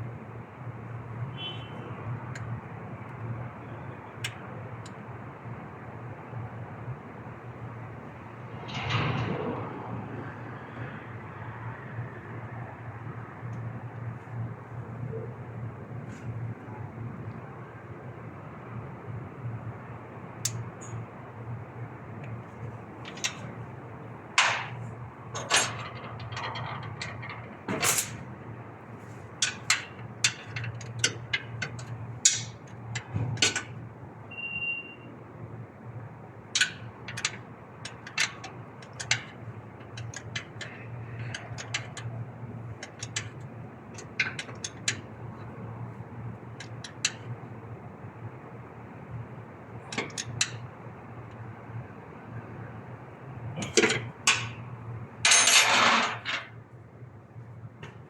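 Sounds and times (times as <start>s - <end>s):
short high beep: 34.3s - 35.0s.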